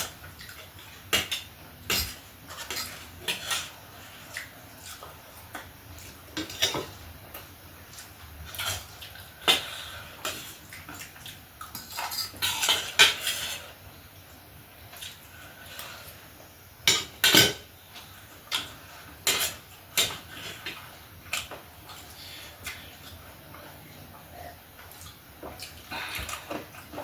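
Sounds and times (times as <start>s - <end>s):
utensils clinking on dishes: 16.9s - 17.7s.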